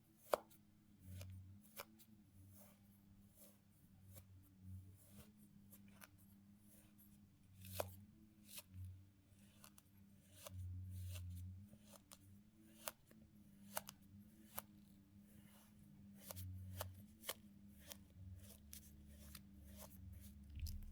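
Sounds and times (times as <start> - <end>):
low steady hum: 19.9 - 20.9.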